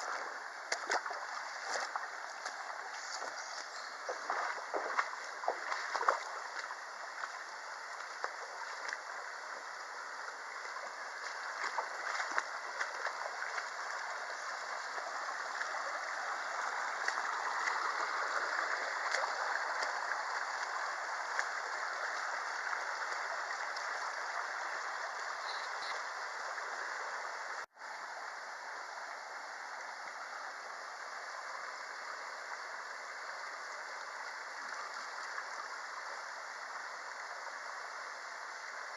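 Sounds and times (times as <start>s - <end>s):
small clicks and splashes: 0.0s - 9.2s, 10.6s - 24.3s
stream rushing over rocks: 0.0s - 38.9s.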